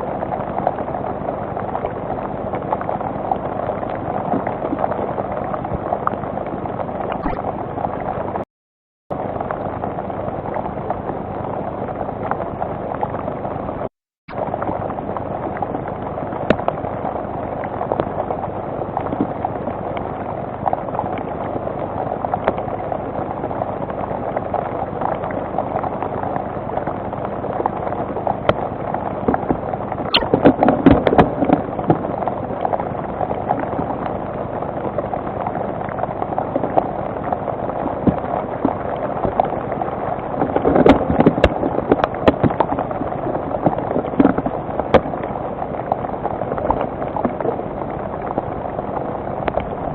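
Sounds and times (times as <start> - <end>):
rain hissing on microphone: 0.0 - 8.4, 9.2 - 49.9
sharp taps and crackles: 40.4 - 42.8.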